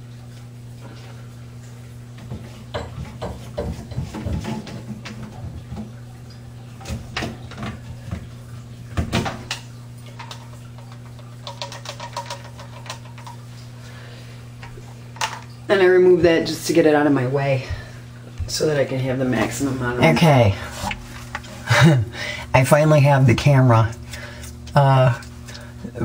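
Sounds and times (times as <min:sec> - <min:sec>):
steady low hum: 0:00.0 - 0:26.0
hard objects clicking and rattling: 0:10.2 - 0:13.4.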